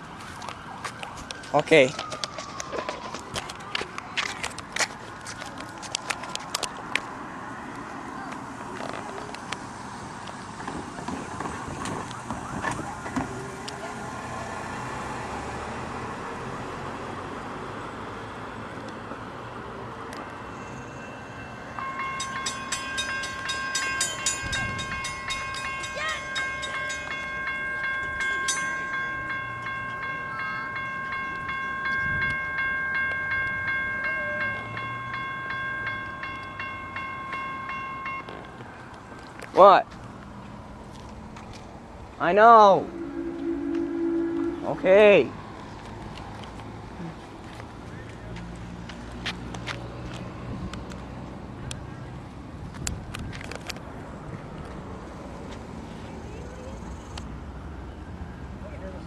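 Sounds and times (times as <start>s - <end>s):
freight train rumble: 21.8s - 38.6s, 41.8s - 46.4s
locomotive horn chord: 42.5s - 45.5s.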